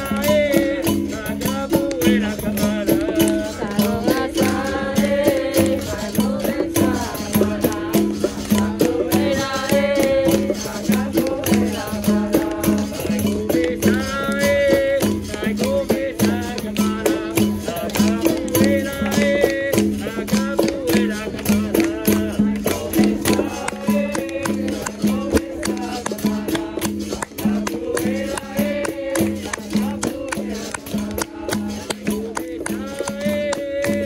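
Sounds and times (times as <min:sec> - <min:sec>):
berimbau and rattle rhythm: 0:00.0 - 0:34.0
hand percussion: 0:00.0 - 0:34.0
people singing: 0:00.0 - 0:34.0.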